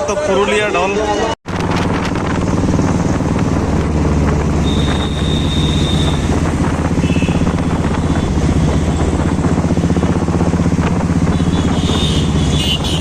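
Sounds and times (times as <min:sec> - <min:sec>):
engine humming: 0:01.5 - 0:13.0.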